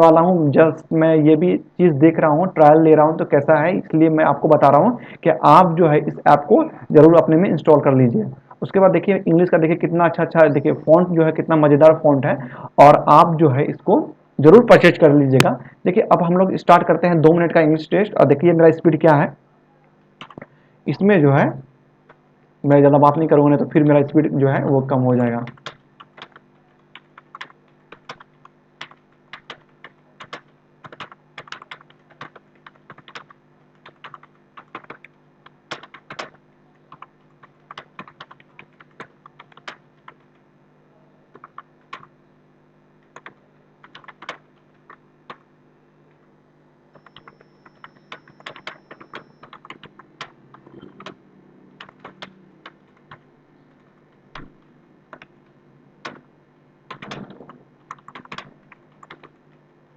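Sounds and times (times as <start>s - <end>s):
faint steady hum: 0.0s - 59.9s
computer keyboard typing: 20.2s - 20.5s, 25.2s - 40.5s, 41.3s - 42.1s, 43.0s - 45.5s, 46.9s - 51.2s, 51.8s - 55.3s, 56.0s - 56.3s, 56.9s - 59.5s.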